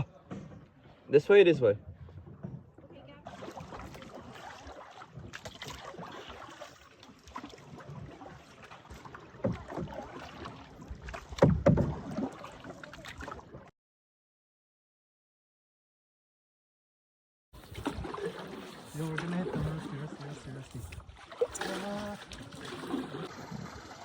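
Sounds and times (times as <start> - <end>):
paddle strokes splashing water: 1.9 - 13.7, 17.6 - 24.0.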